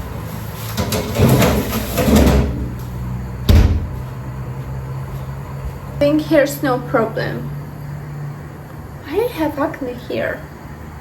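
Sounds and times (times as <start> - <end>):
rustling and scraping: 0.2 - 2.9
sharp bang: 3.5 - 4.0.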